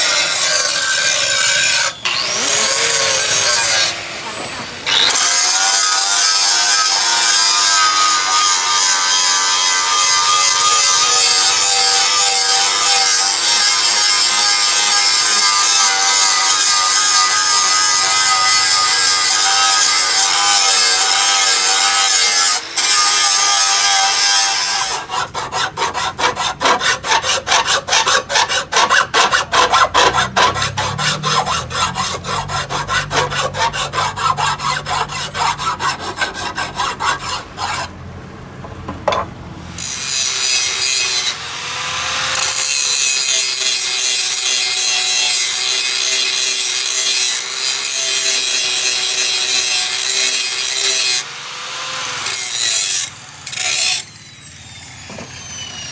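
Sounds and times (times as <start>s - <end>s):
tool rasping on steel blade: 23.8s - 37.9s.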